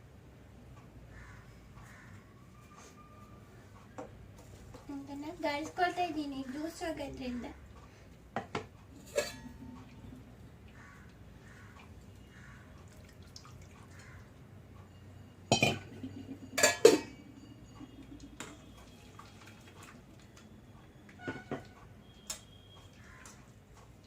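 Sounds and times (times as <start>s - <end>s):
utensils and dishes clinking: 8.9s - 10.0s, 15.5s - 20.0s.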